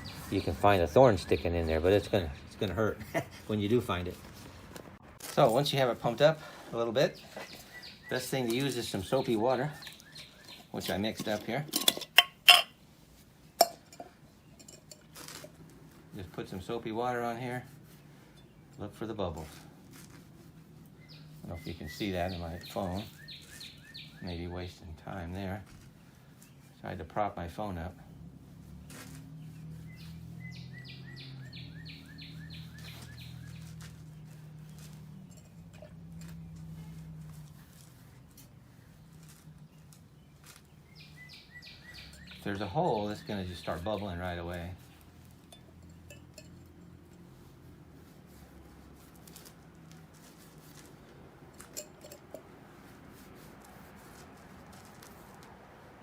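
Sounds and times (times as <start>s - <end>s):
songbird singing: 0.0s - 4.5s, 5.6s - 12.8s, 13.4s - 15.5s, 20.5s - 50.8s
handling wet inner tube: 0.0s - 30.4s, 31.9s - 56.0s.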